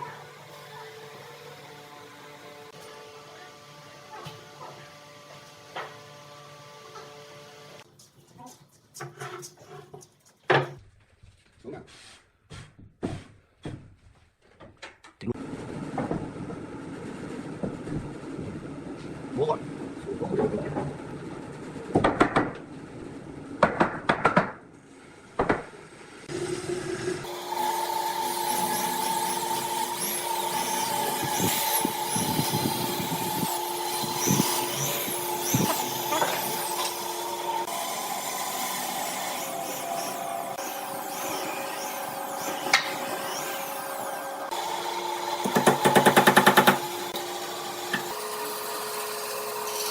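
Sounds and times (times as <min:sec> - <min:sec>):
small machine humming and whining: 0:00.0 - 0:07.9, 0:26.3 - 0:49.9
sharp workshop knocks: 0:21.9 - 0:22.6, 0:23.6 - 0:24.6, 0:25.4 - 0:25.7, 0:45.4 - 0:46.9.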